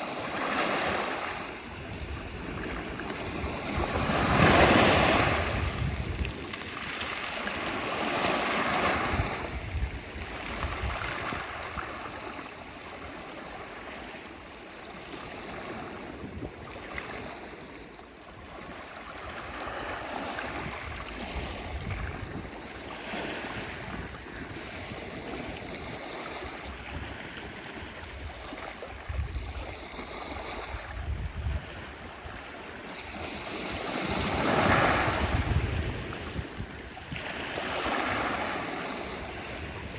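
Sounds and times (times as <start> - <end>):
sea waves washing in: 0.0 - 12.2, 26.2 - 39.9
wind rumbling on microphone: 0.8 - 12.4, 15.8 - 17.3, 19.2 - 39.9.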